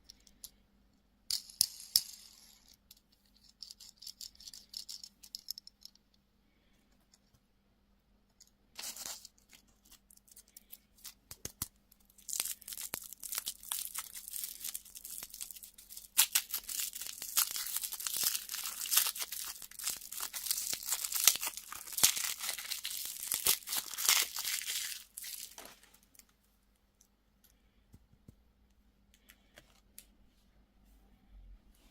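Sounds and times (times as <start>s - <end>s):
packaging crinkling and tearing: 8.8s - 26.2s.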